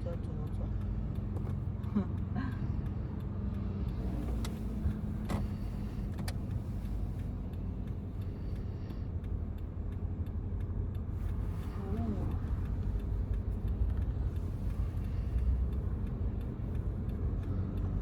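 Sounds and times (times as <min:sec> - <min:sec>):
car engine and tyre rumble: 0:00.0 - 0:18.0
sharp ticks: 0:05.4 - 0:11.6, 0:12.2 - 0:18.0.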